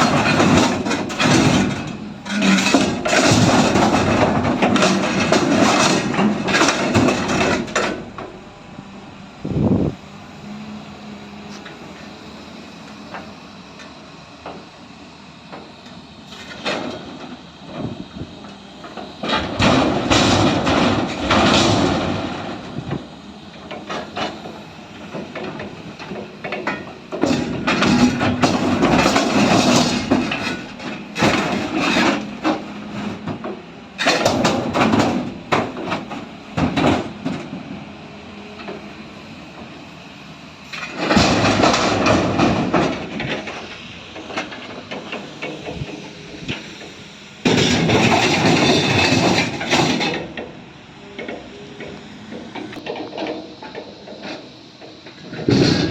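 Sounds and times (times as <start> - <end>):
freight wagons clattering and banging: 0.0 - 8.4, 18.9 - 23.0, 23.6 - 37.7, 40.8 - 46.7, 47.4 - 50.6, 51.2 - 55.9.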